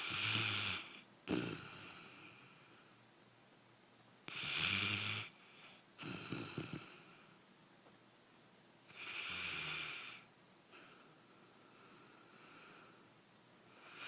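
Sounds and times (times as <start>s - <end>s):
dog snoring: 0.0s - 2.9s, 4.3s - 7.4s, 8.9s - 11.1s, 13.7s - 14.0s.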